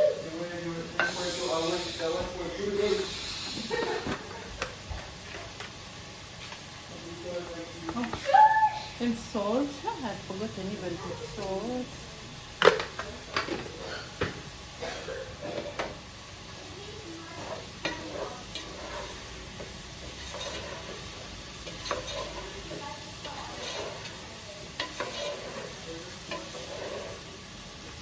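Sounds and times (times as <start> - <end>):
curry sizzling: 0.0 - 28.0
utensil scraping a pan: 14.8 - 27.4.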